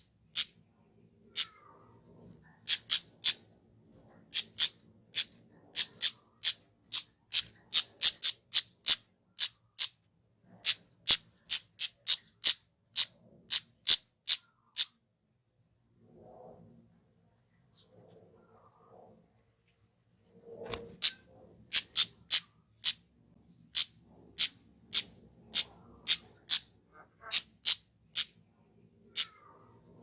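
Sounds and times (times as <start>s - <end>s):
bird high-pitched call notes: 2.7s - 3.4s, 21.8s - 23.0s, 23.8s - 28.3s.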